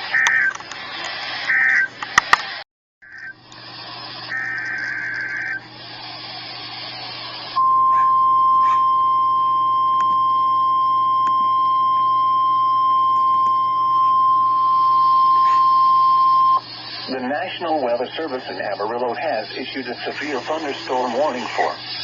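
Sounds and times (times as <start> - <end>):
radio hiss: 0.0 - 9.1, 14.0 - 22.0
steady alarm tone: 1.4 - 2.0, 3.0 - 22.0
warbling data screech: 1.4 - 2.0, 3.0 - 9.1, 14.0 - 22.0.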